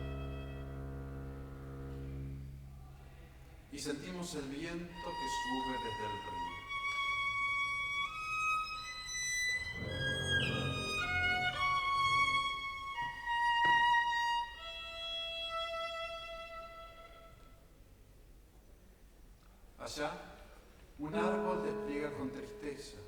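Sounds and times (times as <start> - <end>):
chamber music ensemble: 0.0 - 3.2, 4.1 - 17.3, 21.0 - 23.0
violin high held notes: 4.9 - 17.3, 21.1 - 23.0.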